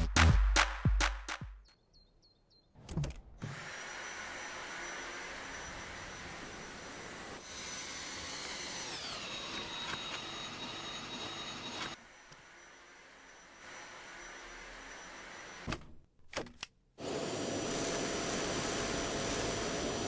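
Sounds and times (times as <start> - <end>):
vacuum cleaner motor whirring: 3.4 - 15.8, 17.0 - 20.0.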